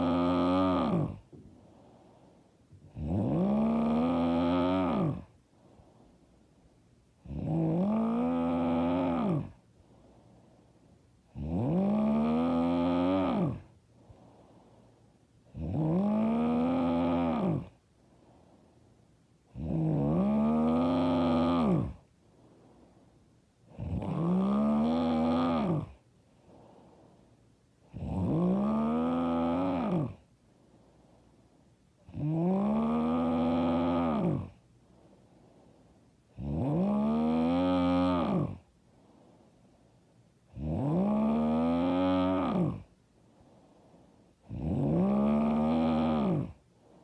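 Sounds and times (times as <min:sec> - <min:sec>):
woman snoring: 0:00.0 - 0:01.2, 0:02.8 - 0:05.4, 0:07.2 - 0:09.6, 0:11.3 - 0:13.8, 0:15.5 - 0:17.8, 0:19.5 - 0:22.0, 0:23.7 - 0:26.0, 0:27.9 - 0:30.3, 0:32.0 - 0:34.6, 0:36.3 - 0:38.7, 0:40.5 - 0:42.9, 0:44.4 - 0:46.6.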